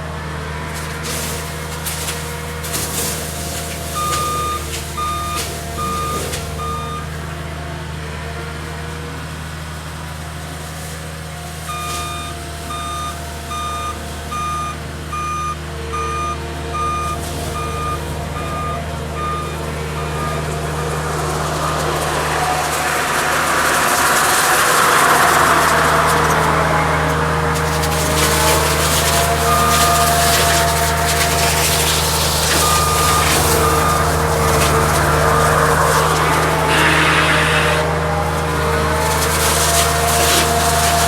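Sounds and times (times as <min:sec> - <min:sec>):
diesel engine running: 0:00.0 - 0:41.0
backup alarm beeping: 0:03.8 - 0:07.2, 0:11.6 - 0:22.0, 0:28.2 - 0:37.9.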